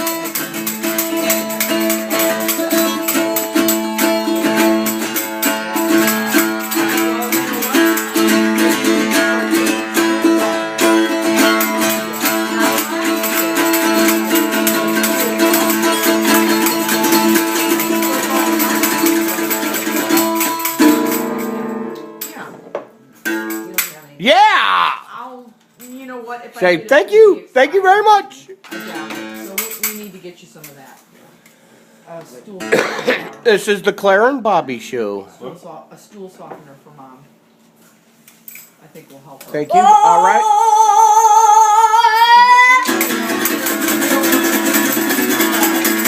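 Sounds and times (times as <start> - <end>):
rattle shaking: 0.0 - 10.0, 11.0 - 22.4, 28.8 - 30.2, 42.9 - 46.0
strummed string instrument: 0.0 - 22.4, 28.7 - 30.0, 42.6 - 46.0.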